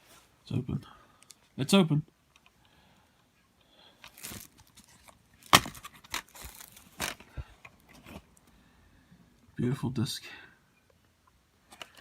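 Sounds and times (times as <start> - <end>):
plastic rustling: 4.0 - 8.5, 11.7 - 12.0.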